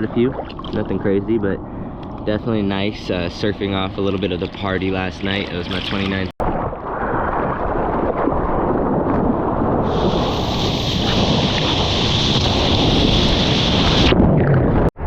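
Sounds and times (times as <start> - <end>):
wind buffeting the microphone: 0.0 - 15.0
ocean surf: 9.6 - 14.2
rushing whitewater hiss: 9.9 - 14.0.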